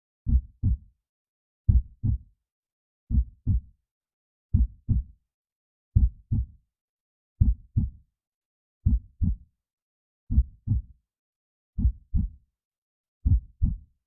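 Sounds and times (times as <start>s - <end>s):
heartbeat thumps: 0.3s - 0.8s, 1.7s - 2.2s, 3.1s - 3.6s, 4.6s - 5.0s, 6.0s - 6.5s, 7.4s - 8.0s, 10.3s - 10.8s, 11.8s - 12.3s, 13.3s - 13.8s.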